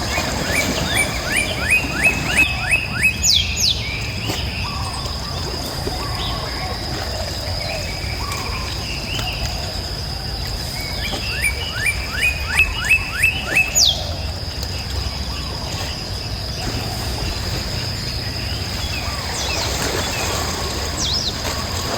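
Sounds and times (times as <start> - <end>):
bird calling rising notes: 0.0 - 6.8, 10.8 - 14.4.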